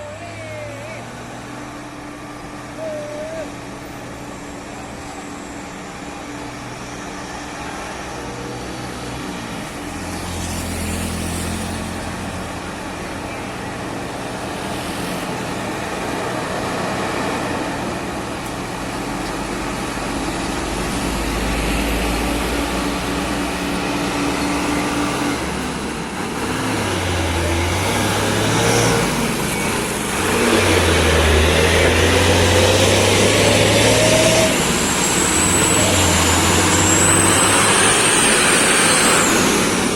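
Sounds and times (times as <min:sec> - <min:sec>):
diesel truck engines climbing: 0:00.0 - 0:39.9
rising whine: 0:15.7 - 0:39.9.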